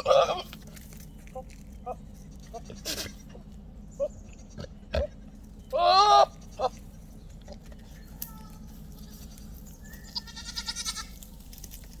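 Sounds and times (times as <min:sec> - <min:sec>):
goat calling: 0:00.0 - 0:00.6, 0:01.4 - 0:07.6, 0:08.3 - 0:11.2.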